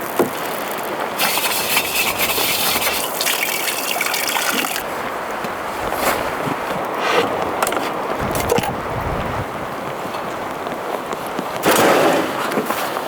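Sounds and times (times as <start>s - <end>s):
water splashing onto dishes: 1.0s - 6.8s
dishes being scrubbed: 1.2s - 8.8s.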